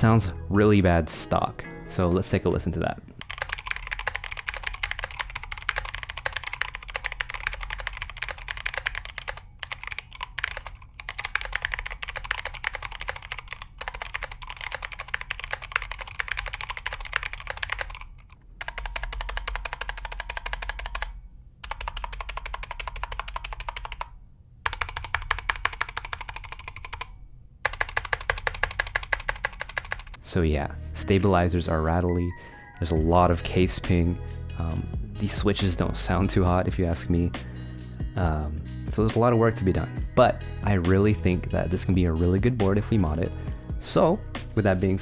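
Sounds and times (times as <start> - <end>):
keyboard stabilizers rattling: 3.2 - 21.1
mechanical keyboard typing: 3.2 - 24.1, 24.7 - 30.2.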